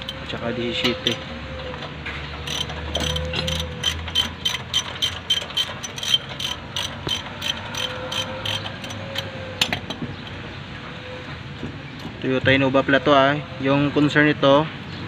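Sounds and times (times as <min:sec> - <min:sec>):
ratchet wrench clicking: 0:00.0 - 0:10.4.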